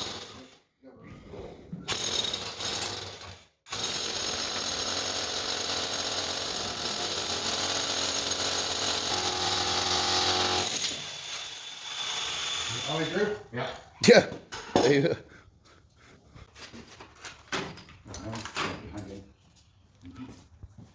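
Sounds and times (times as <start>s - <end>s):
electric motor machine rattling: 5.8s - 13.0s.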